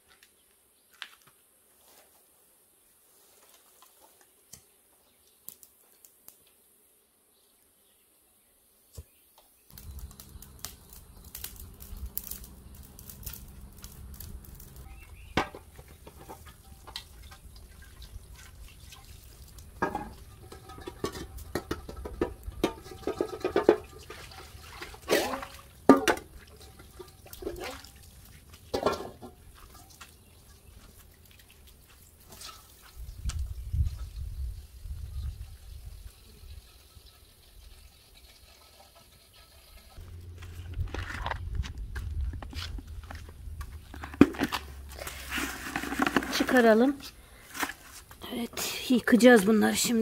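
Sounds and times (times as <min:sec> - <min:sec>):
knocks and clatters of dishes: 0:19.8 - 0:24.3, 0:24.9 - 0:27.7, 0:28.7 - 0:29.9.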